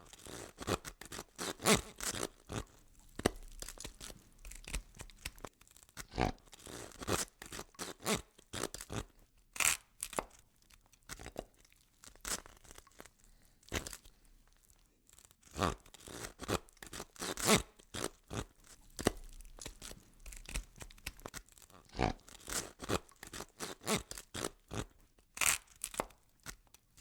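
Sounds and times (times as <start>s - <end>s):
flesh tearing and crunching: 0.0s - 27.0s
saw rasping through bone: 0.1s - 2.8s, 16.0s - 21.3s, 21.9s - 24.8s.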